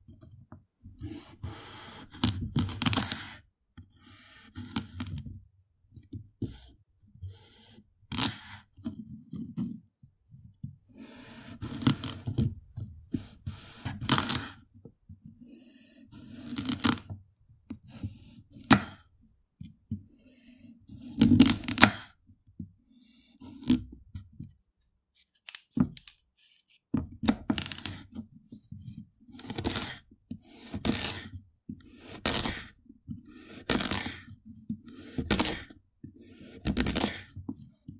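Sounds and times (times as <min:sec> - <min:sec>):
knife cutting carrot: 0:07.4 - 0:08.6, 0:11.0 - 0:12.5, 0:13.2 - 0:14.6, 0:16.1 - 0:17.1, 0:20.9 - 0:22.2, 0:23.4 - 0:24.0, 0:25.4 - 0:28.2, 0:29.3 - 0:37.4.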